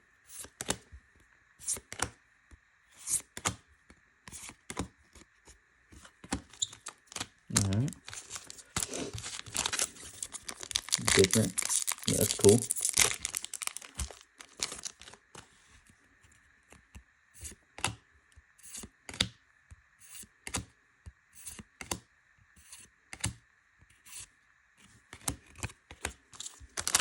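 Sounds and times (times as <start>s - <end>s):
cards clicking and rustling: 6.0s - 15.5s, 25.2s - 27.0s.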